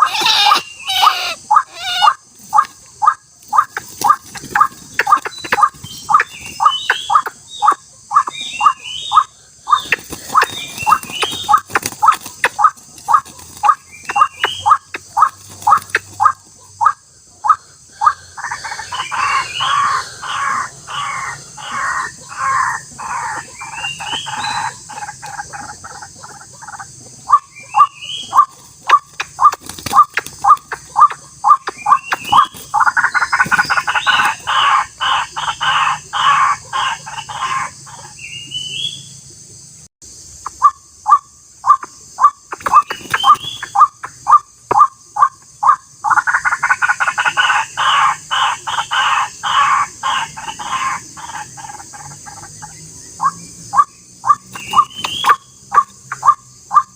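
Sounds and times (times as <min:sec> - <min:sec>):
waterhens calling harshly: 0:00.0 - 0:38.2, 0:40.4 - 0:56.9.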